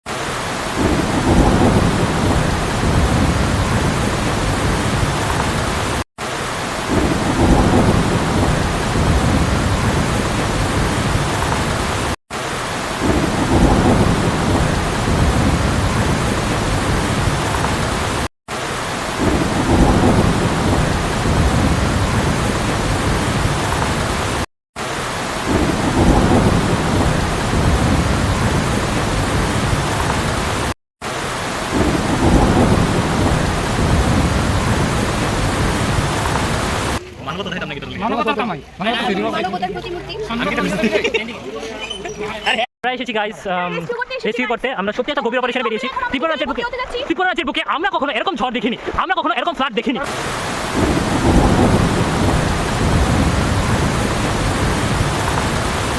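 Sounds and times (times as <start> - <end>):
heavy rain: 0.1 - 42.7, 50.0 - 55.9
thunder rumbling: 0.6 - 6.0, 6.8 - 12.1, 13.0 - 18.2, 19.2 - 24.4, 25.4 - 30.7, 31.6 - 42.6, 50.6 - 55.9.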